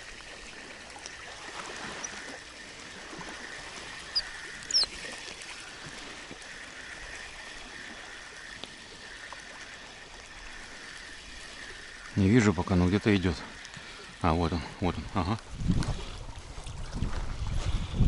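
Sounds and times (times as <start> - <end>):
lapping water: 0.0 - 18.0
wind: 0.0 - 18.0
high bird chirps: 4.2 - 4.9.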